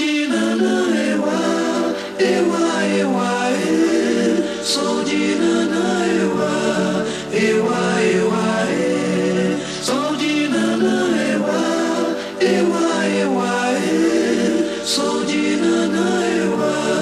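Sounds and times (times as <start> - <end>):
voices singing in harmony: 0.0 - 17.0.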